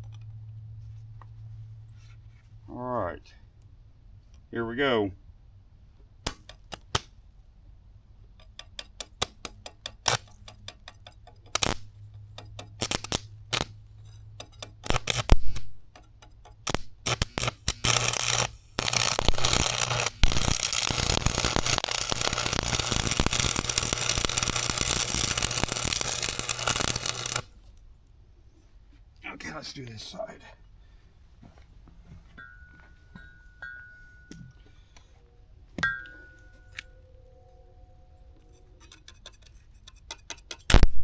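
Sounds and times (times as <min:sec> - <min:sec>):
sharp clicks: 0:06.3 - 0:07.1, 0:08.4 - 0:13.7, 0:14.4 - 0:27.5
arc welding hiss: 0:11.6 - 0:11.8, 0:12.8 - 0:13.7, 0:14.8 - 0:15.6, 0:16.7 - 0:27.5.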